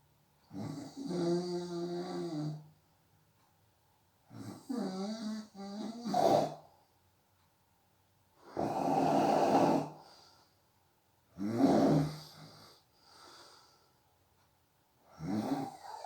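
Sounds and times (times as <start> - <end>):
person snoring: 0.5 - 2.6, 4.3 - 6.6, 8.5 - 10.0, 11.4 - 12.8, 15.1 - 16.0.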